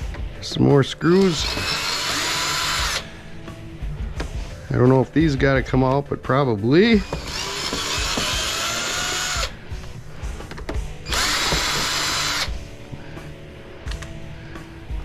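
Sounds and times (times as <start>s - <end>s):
power drill running: 1.2s - 3.1s, 6.9s - 9.6s, 11.0s - 12.7s.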